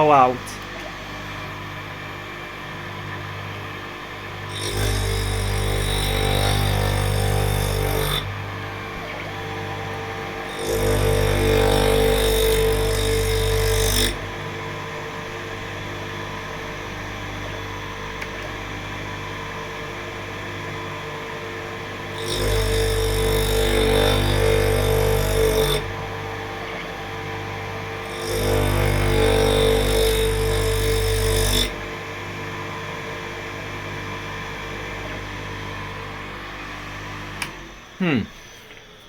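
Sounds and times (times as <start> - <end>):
surface grinder motor running: 0.0 - 38.9
stone grinding workpiece: 10.6 - 14.1.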